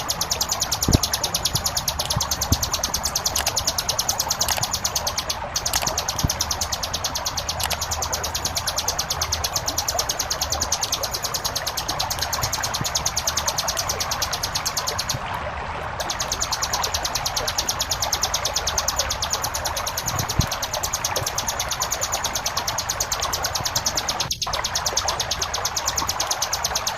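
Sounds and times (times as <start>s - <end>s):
bird buzzing trill: 0.0s - 15.2s
flowing water: 0.0s - 26.9s.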